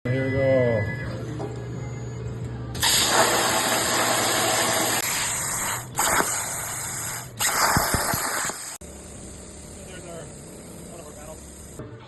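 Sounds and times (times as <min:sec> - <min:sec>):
plasma cutter hissing: 0:02.8 - 0:11.8.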